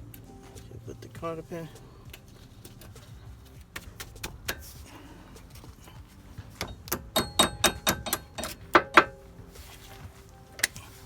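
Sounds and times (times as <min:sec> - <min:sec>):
metal tools striking steel parts: 0:06.6 - 0:09.2.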